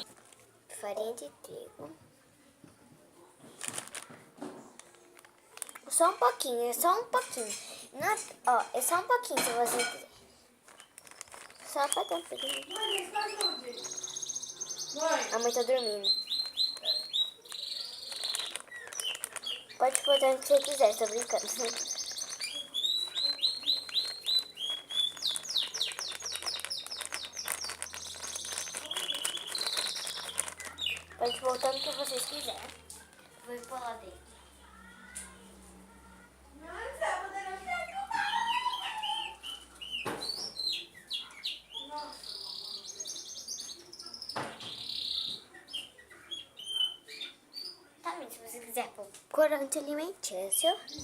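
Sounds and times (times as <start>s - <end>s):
bird singing: 11.4s - 32.9s, 37.8s - 47.8s.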